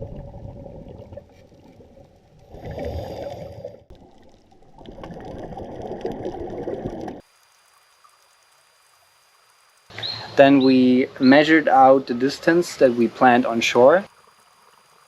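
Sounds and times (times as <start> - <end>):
muffled underwater bubbling: 0.0 - 7.2.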